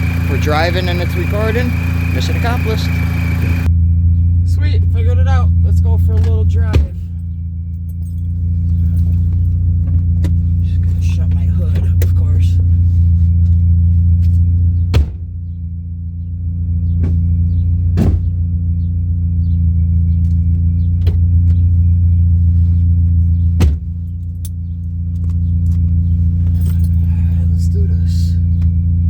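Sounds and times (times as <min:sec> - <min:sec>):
car engine idling: 0:00.0 - 0:29.0
sharp clunks: 0:14.9 - 0:15.3, 0:17.9 - 0:18.4, 0:23.6 - 0:24.6.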